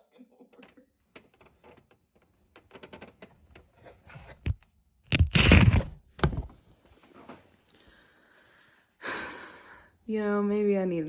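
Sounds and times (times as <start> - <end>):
rustling: 4.1 - 7.4.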